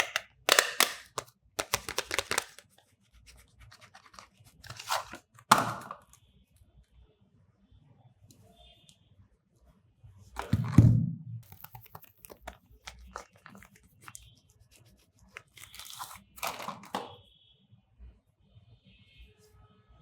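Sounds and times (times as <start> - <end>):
packaging crackling: 0.0 - 2.7, 11.4 - 14.2, 15.5 - 16.6
packaging tearing: 0.0 - 2.7, 11.5 - 14.2, 15.4 - 16.6.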